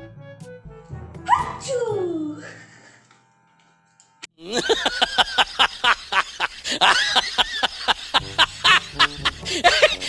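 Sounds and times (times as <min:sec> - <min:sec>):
small dog yapping: 0:01.3 - 0:02.0.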